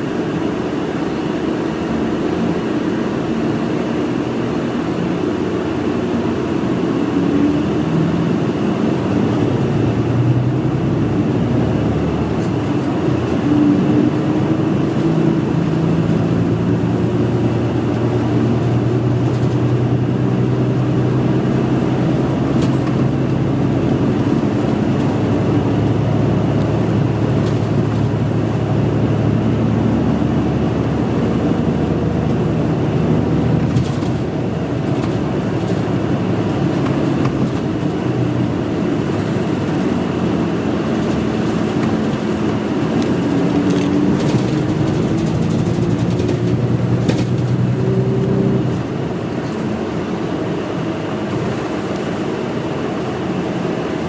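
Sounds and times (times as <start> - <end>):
bus engine running: 0.0 - 54.0
road noise: 0.0 - 54.0.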